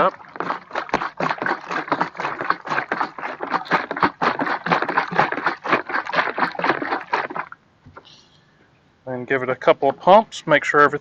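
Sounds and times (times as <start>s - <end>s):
liquid sloshing in shaken bottle: 0.0s - 7.6s.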